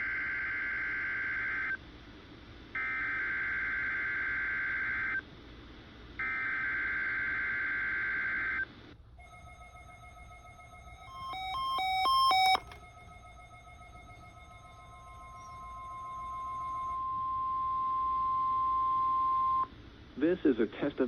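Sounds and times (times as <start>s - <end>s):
low radio hiss: 4.1s - 6.2s, 8.6s - 21.0s
warbling data tones: 9.2s - 18.3s.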